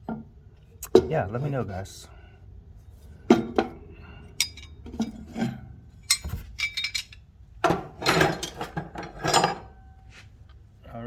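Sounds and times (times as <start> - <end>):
metal hand tools clinking: 6.0 - 7.2.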